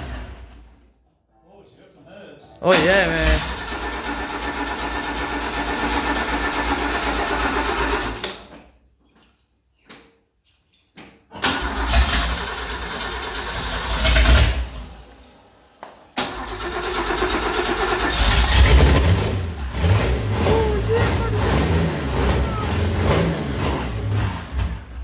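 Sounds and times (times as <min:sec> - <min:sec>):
car engine starting and revving: 0:03.2 - 0:08.2, 0:11.4 - 0:15.0, 0:16.2 - 0:25.0.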